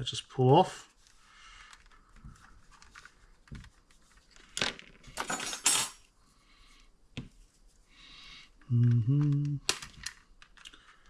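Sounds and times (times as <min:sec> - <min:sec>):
small parts clicking and scraping: 0:09.2 - 0:11.0.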